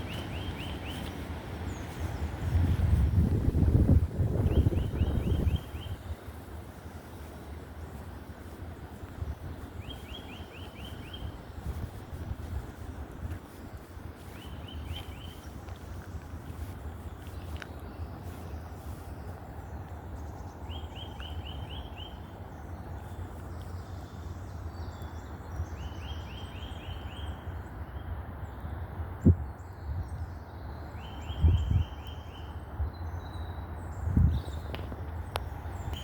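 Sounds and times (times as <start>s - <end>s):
steady low rumble: 0.0s - 25.6s
songbird singing: 0.0s - 36.0s.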